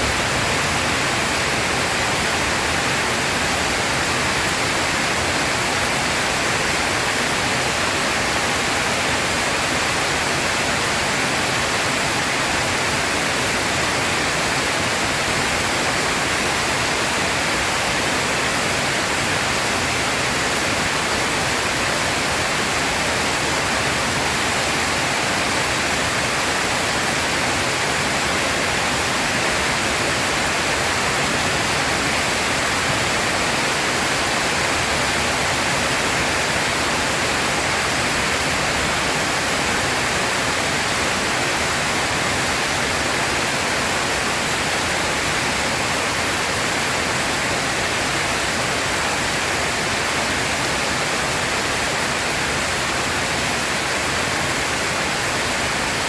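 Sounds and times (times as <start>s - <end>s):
heavy rain pouring: 0.0s - 10.4s.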